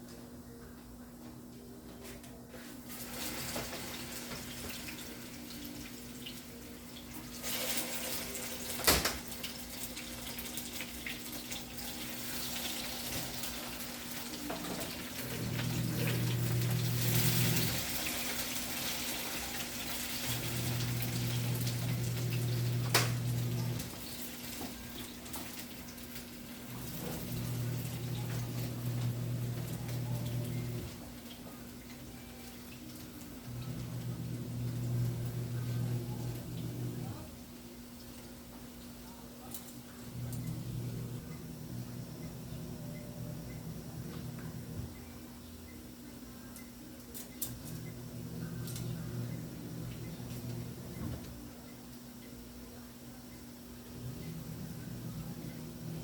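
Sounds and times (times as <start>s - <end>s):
running water splashing: 3.0s - 37.1s
low hum: 40.0s - 45.8s.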